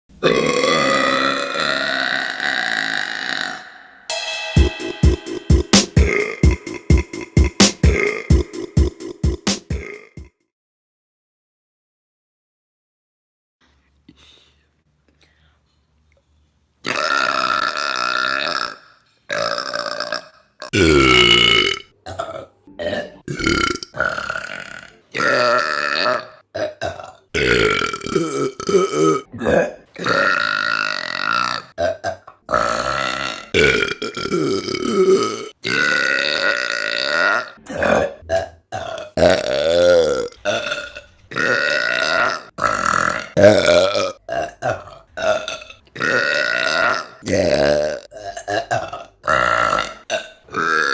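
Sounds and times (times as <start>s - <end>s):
women burping: 0.2s - 3.6s.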